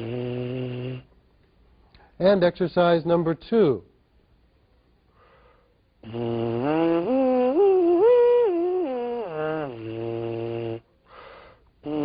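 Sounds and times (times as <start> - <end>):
brass mouthpiece buzzing: 0.0 - 1.2, 6.0 - 10.9, 11.8 - 12.0.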